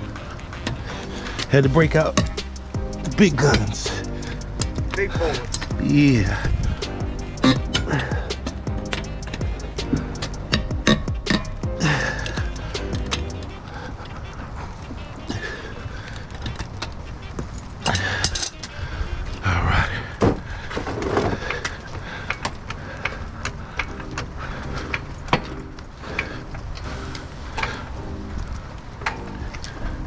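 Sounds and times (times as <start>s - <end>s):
metal scraping: 0.0s - 13.9s, 26.9s - 30.0s
passing traffic rumble: 0.0s - 18.6s.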